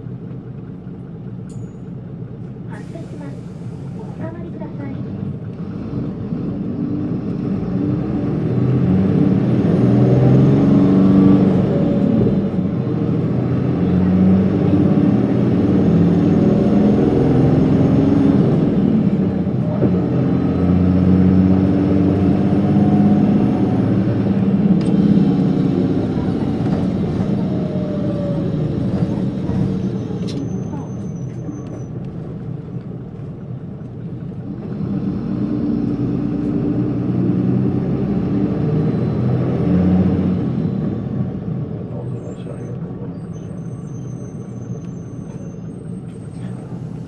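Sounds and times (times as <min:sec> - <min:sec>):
bus diesel engine running: 0:00.0 - 0:47.0
high engine whine: 0:00.0 - 0:47.0.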